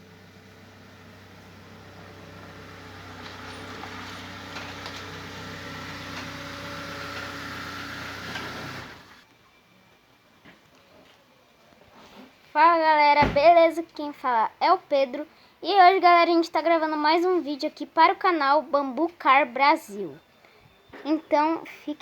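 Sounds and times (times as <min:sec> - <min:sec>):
car engine hum: 0:00.0 - 0:09.2.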